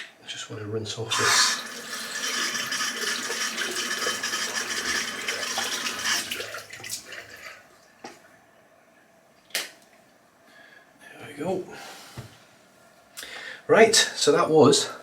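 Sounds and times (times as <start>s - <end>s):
tap water running into sink: 1.1s - 7.5s.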